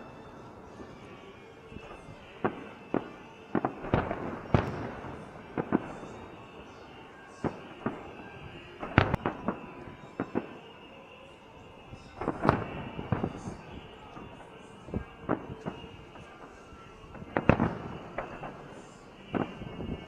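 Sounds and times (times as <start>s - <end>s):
firework bangs: 0.0s - 10.7s, 12.0s - 20.0s.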